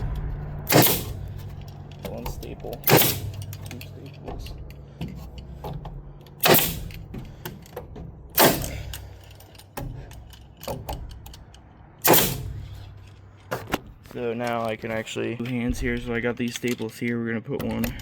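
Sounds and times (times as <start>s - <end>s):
staple gun shots: 0.6s - 3.8s, 6.4s - 7.4s, 8.3s - 9.1s, 12.0s - 12.8s.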